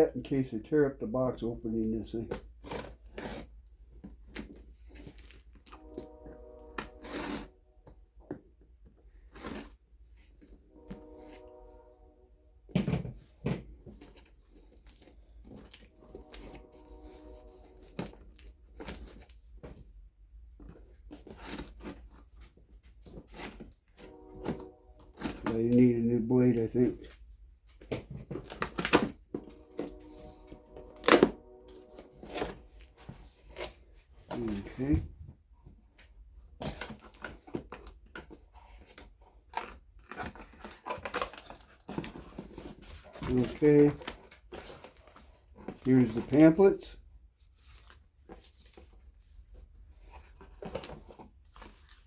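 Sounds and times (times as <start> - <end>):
packaging rustling and crinkling: 20.5 - 34.9, 36.5 - 46.7, 47.4 - 52.0.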